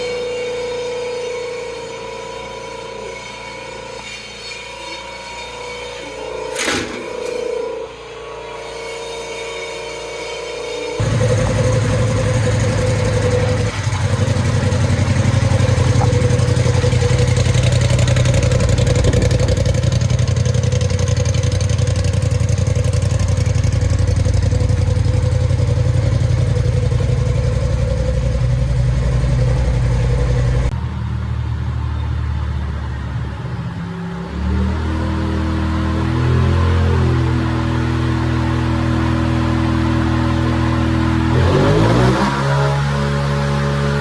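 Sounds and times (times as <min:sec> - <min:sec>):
tyres spinning: 0:11.0 - 0:22.3
engine at high revs: 0:11.0 - 0:30.8, 0:34.1 - 0:44.0.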